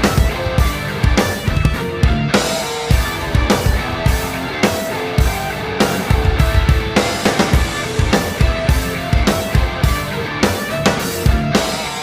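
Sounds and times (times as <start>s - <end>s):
rock music with distorted guitar: 0.0s - 12.0s.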